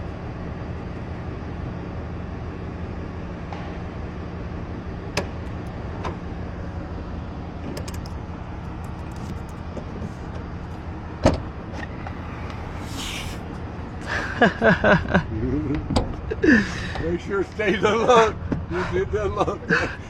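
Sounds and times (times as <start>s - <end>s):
vehicle engine hum: 0.0s - 20.0s
lock tool clicks: 7.8s - 8.2s.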